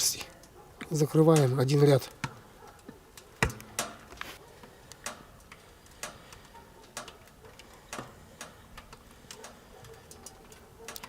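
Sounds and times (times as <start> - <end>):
wood fire crackling: 0.0 - 11.0.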